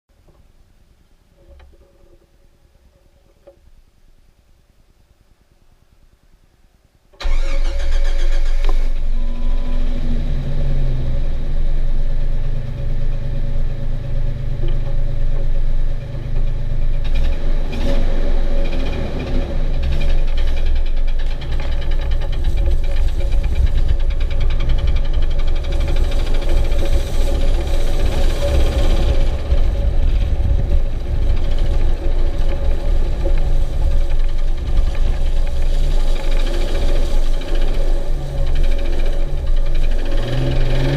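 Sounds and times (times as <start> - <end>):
car engine running: 7.2 - 40.9
engine knocking: 11.2 - 40.9.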